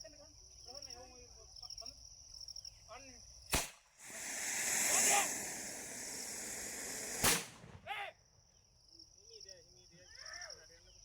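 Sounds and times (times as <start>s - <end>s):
firecracker bang: 3.6s - 7.9s
firecracker cracking: 3.6s - 7.9s
firecracker hissing: 3.6s - 8.0s.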